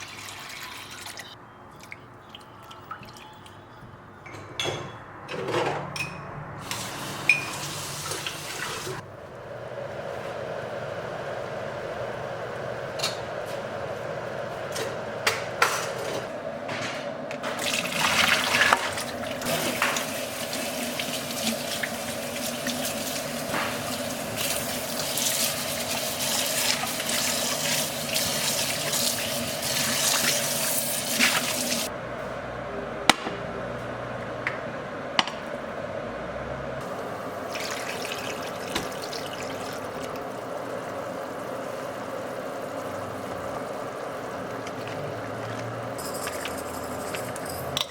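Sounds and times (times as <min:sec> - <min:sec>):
dishes clinking: 0:04.2 - 0:06.4, 0:07.2 - 0:07.6, 0:46.0 - 0:47.9
steady low hum: 0:09.0 - 0:17.5
tap running into sink: 0:38.6 - 0:39.2.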